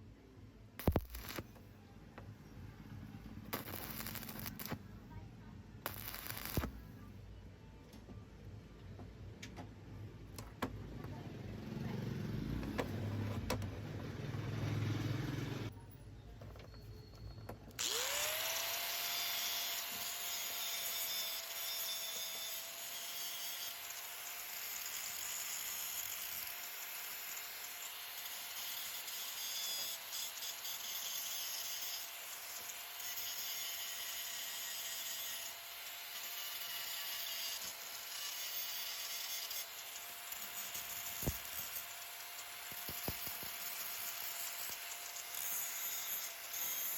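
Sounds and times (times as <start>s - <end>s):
power tool grinding metal: 0.8s - 1.4s, 3.5s - 4.8s, 5.9s - 6.8s, 17.8s - 46.9s.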